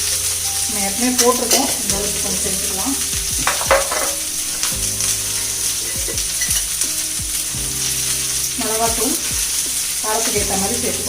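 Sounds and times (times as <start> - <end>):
spoon stirring in skillet: 0.0 - 7.1
vegetables sizzling in oil: 0.0 - 11.0.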